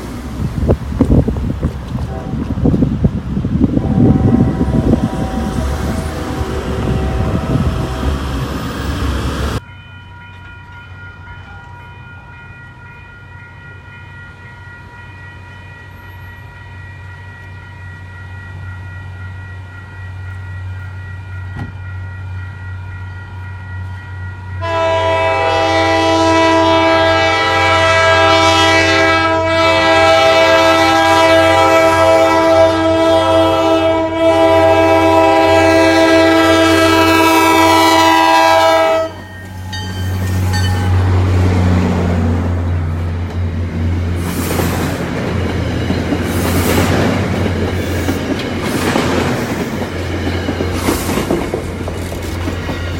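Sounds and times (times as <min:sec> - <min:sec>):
train low hum: 0:00.0 - 0:52.9
train air horn chord: 0:02.1 - 0:02.4, 0:03.8 - 0:08.3, 0:24.6 - 0:39.3.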